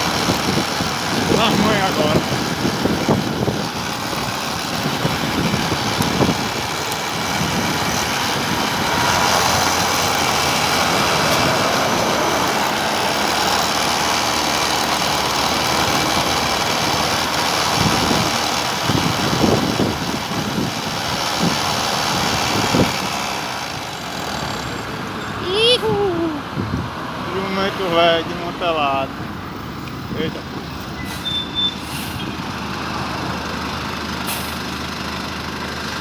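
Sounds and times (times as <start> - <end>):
wind noise: 0.0 - 12.6, 15.7 - 24.0, 25.8 - 27.1
low wind buffets: 0.0 - 27.4
road rumble: 0.0 - 36.0.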